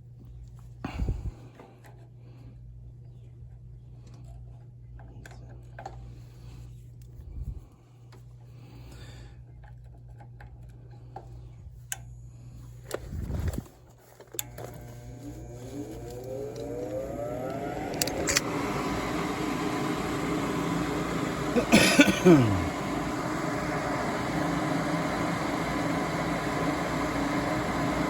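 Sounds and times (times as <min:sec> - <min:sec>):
furnace low hum: 0:00.0 - 0:28.0
motor whine rising in pitch: 0:14.5 - 0:28.0.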